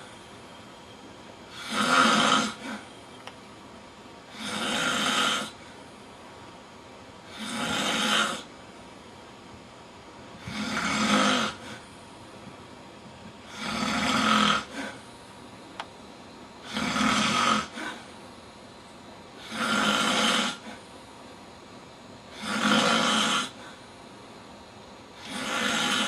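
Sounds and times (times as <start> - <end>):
man snoring: 1.5 - 2.9, 4.3 - 5.6, 7.2 - 8.5, 10.4 - 11.9, 13.4 - 15.0, 16.6 - 18.1, 19.4 - 20.8, 22.3 - 23.8, 25.2 - 26.0.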